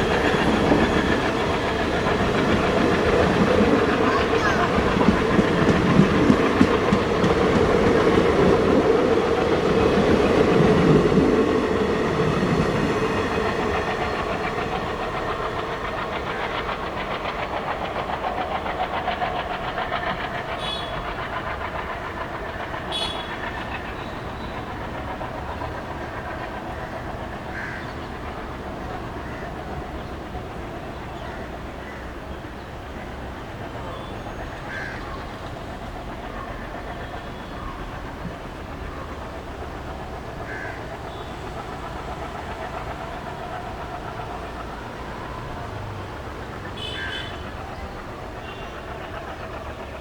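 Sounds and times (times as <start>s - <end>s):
train rolling past: 0.0s - 50.0s
wheels clicking over rail joints: 0.0s - 50.0s.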